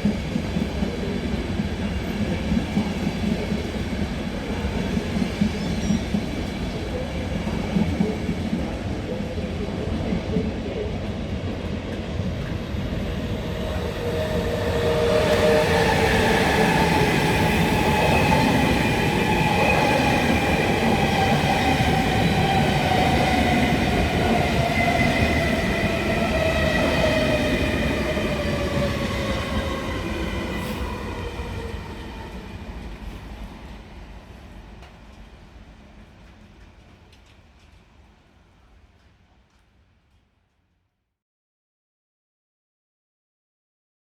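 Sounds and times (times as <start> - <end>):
electric train passing: 11.2 - 34.1.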